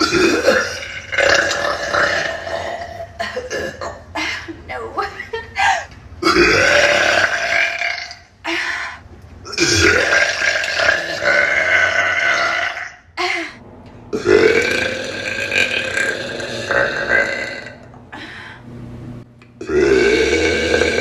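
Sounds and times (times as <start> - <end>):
woman burping: 0.0 - 4.6, 14.2 - 18.0, 19.6 - 21.0.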